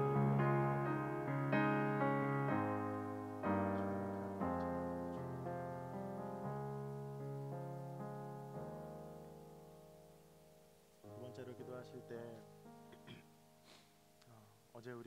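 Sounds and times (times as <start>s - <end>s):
piano playing slow chords: 0.0s - 14.2s.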